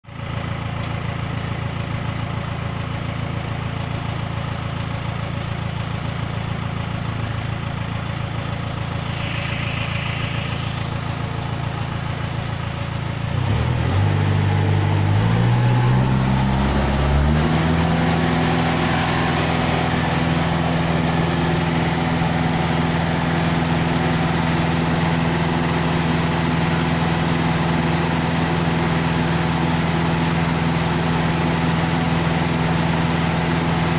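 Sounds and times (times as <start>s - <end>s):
diesel engine idling and revving: 0.0s - 33.9s
brief hiss: 9.1s - 10.8s.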